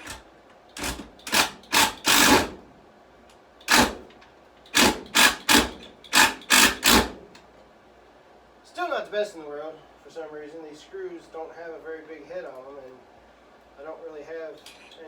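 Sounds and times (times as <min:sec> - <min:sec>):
power drill driving screws: 0:00.8 - 0:02.6, 0:03.6 - 0:04.1, 0:04.7 - 0:07.2.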